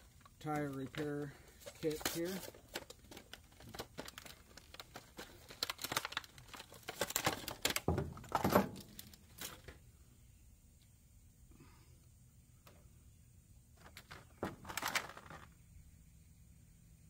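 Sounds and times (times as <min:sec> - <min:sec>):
plastic packaging rustling: 0:00.0 - 0:09.8, 0:13.8 - 0:15.6.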